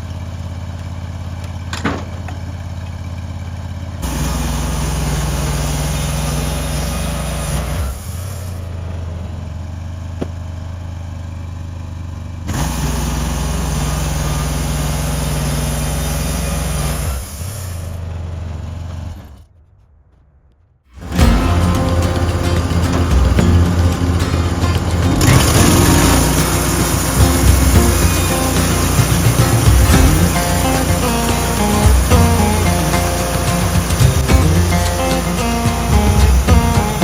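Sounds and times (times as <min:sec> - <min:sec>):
sawmill engine revving: 0:04.0 - 0:09.4, 0:12.5 - 0:19.2, 0:21.0 - 0:37.0.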